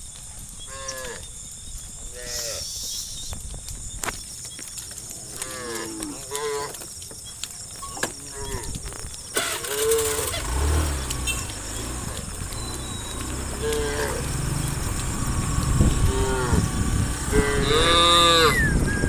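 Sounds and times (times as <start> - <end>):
cattle mooing: 13.4 - 18.7.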